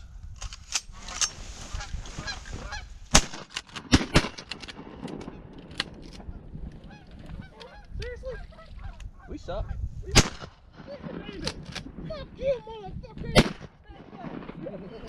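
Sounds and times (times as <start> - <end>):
geese honking: 1.6 - 3.0, 6.2 - 9.8
shotgun blasts: 3.1 - 5.7, 10.1 - 12.0, 13.3 - 15.0.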